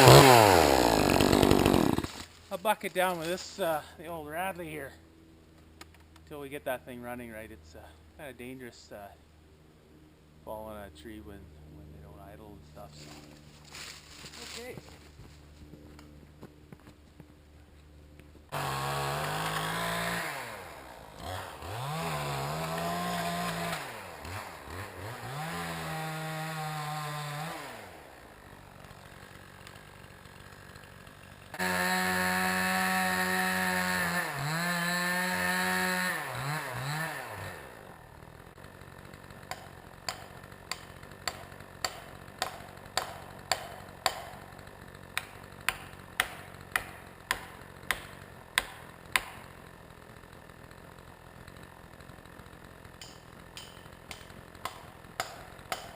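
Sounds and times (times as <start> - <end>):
chainsaw revving: 0.0 - 2.3, 12.2 - 15.1, 18.5 - 55.9.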